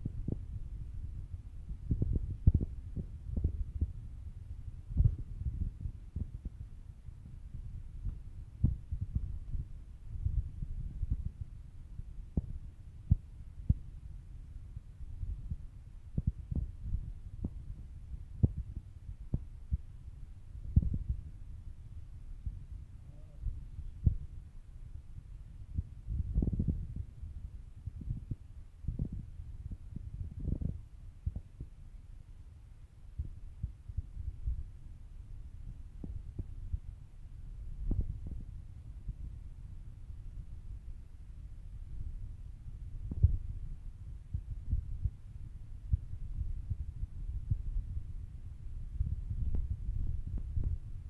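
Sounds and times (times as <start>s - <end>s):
low thuds and rumble: 0.0s - 6.6s, 43.0s - 43.7s, 44.3s - 51.0s
low rumble: 37.8s - 51.0s.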